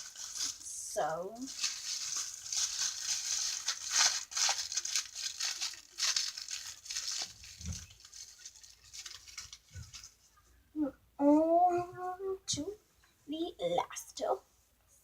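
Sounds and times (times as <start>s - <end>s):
plastic bag crinkling: 0.0s - 10.3s.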